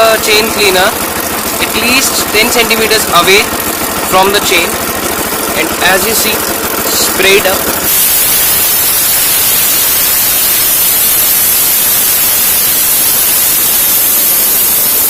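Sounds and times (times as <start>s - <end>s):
aerosol spray hissing: 7.8s - 15.0s.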